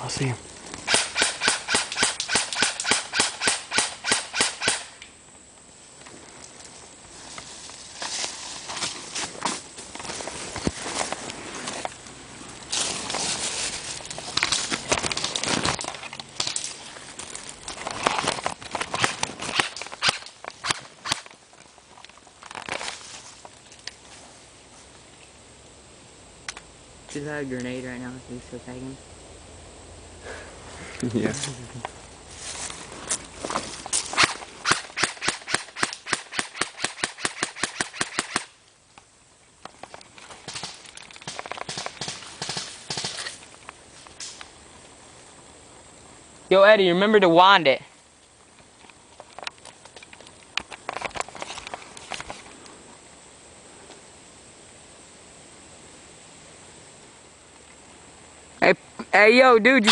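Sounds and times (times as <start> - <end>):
airsoft gun rapid shots: 0.9 - 4.9, 34.2 - 38.5, 41.7 - 43.2
footsteps through dry leaves: 7.1 - 15.8, 32.3 - 34.2
twigs snapping: 12.5 - 24.0, 32.6 - 44.5.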